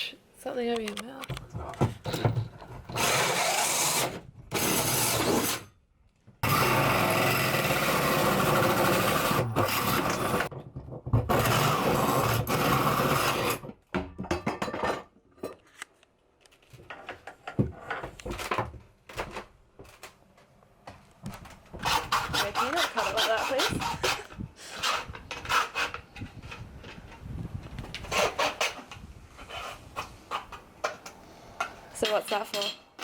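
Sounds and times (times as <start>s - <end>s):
clicks and knocks of handling: 0.7s - 2.7s
power tool cutting: 3.0s - 5.6s, 6.4s - 10.5s.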